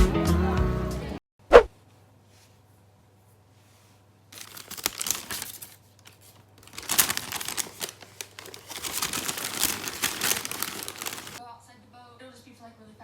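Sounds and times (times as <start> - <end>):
crinkling and rustling: 4.4 - 11.4.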